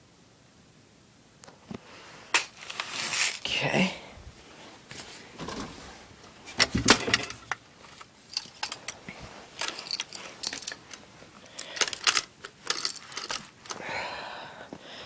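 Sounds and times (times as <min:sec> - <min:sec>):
airsoft guns clacking and rattling: 0:06.5 - 0:13.8.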